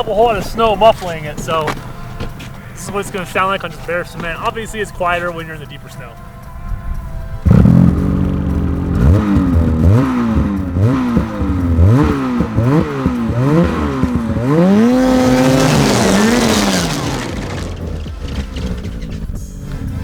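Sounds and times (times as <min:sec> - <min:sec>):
snowmobile engine revving: 0:07.4 - 0:19.1.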